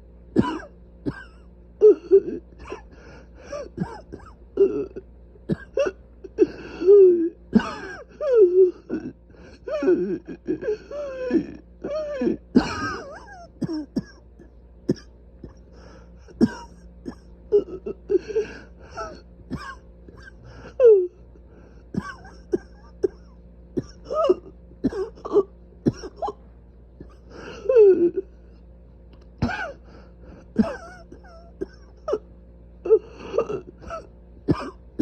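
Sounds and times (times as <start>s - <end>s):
person coughing: 0.4s - 9.2s, 9.8s - 15.7s, 16.3s - 20.8s, 21.9s - 26.4s, 27.0s - 28.3s, 29.4s - 29.9s, 30.5s - 32.2s, 32.9s - 35.0s
throat clearing: 16.3s - 17.9s, 22.0s - 26.4s, 29.4s - 29.8s, 33.2s - 34.8s.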